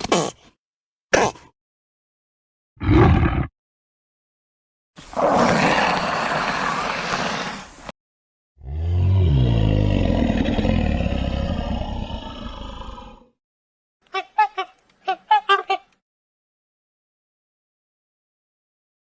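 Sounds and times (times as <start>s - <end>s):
deep animal roar: 2.8s - 3.5s, 8.6s - 13.3s
harsh animal roar: 2.8s - 3.5s, 5.1s - 7.7s, 8.6s - 13.3s.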